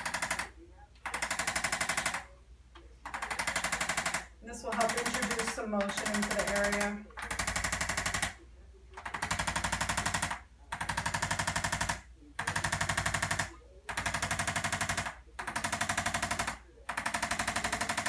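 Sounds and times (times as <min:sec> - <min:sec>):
adjusting instrument tapping rapidly: 0:03.1 - 0:08.3.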